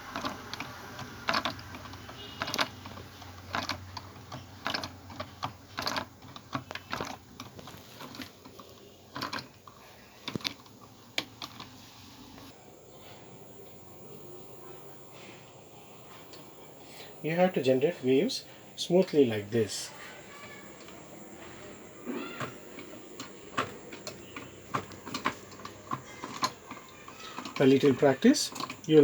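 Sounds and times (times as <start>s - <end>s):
mechanism clicks and knocks: 0.0s - 11.8s, 20.3s - 29.0s.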